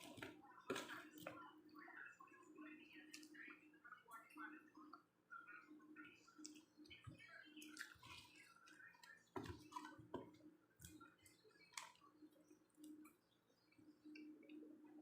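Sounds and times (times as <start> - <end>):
chewing french fries: 2.2 - 15.0.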